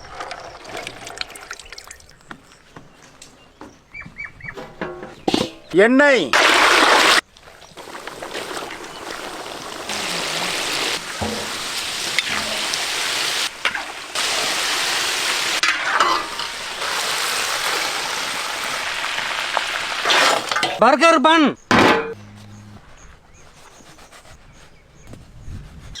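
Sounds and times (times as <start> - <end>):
chicken sizzling in hot oil: 7.8 - 20.5.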